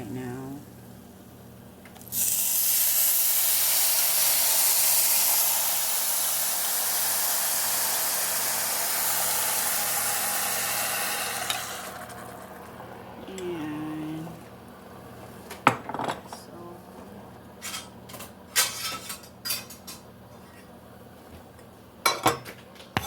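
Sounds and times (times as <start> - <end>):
hot pan sizzling with steam: 2.0 - 12.7.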